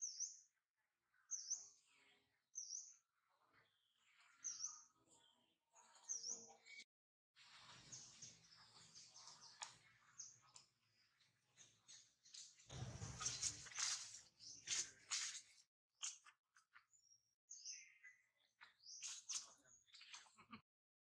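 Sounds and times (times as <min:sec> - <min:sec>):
bird chirping: 0:00.0 - 0:00.5, 0:07.7 - 0:15.4.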